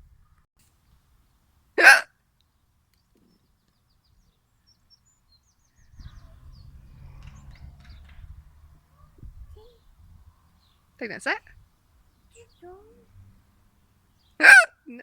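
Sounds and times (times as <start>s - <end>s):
loud sharp hiccup: 1.8s - 2.1s, 14.4s - 14.7s
faint low rumble: 5.8s - 10.8s.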